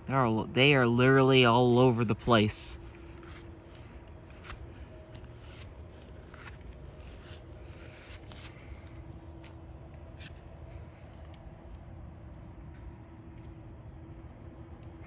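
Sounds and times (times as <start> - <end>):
faint hum: 0.0 - 15.0.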